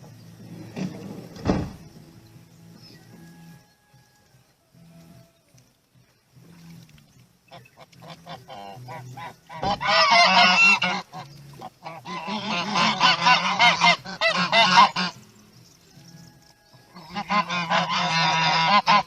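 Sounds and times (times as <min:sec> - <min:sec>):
geese honking: 0:06.4 - 0:19.0.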